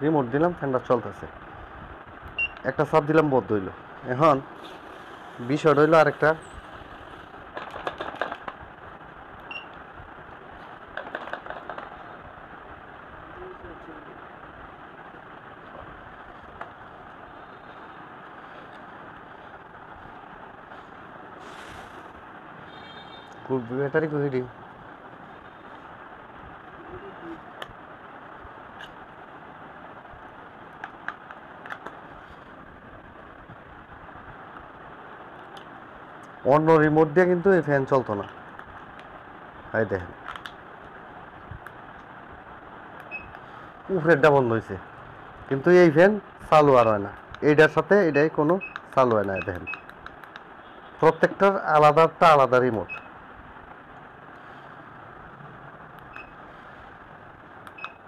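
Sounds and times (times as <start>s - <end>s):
background hiss: 0.0s - 58.0s
objects clicking and rattling: 7.5s - 8.6s, 11.0s - 12.0s.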